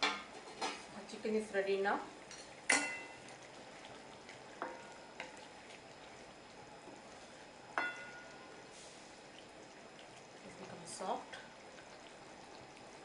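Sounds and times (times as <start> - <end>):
food sizzling in a pot: 0.0 - 13.0
metal spoon clinking on pot: 2.3 - 3.2, 7.8 - 8.3.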